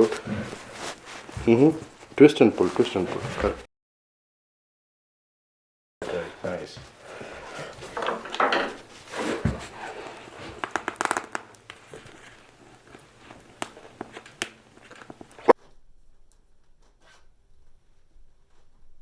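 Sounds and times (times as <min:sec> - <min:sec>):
tools rubbing and scraping tire: 0:00.0 - 0:02.0.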